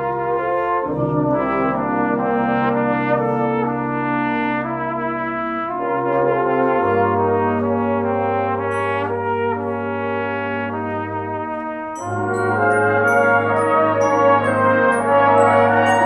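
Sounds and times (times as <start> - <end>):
cornet playing slow melody: 0.0 - 16.0
low sustained accompaniment: 12.0 - 16.0.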